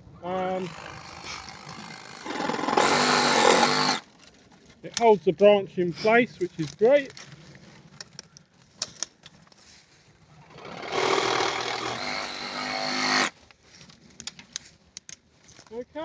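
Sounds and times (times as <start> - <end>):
reciprocating saw cutting branch: 0.5 - 4.2, 10.5 - 13.4.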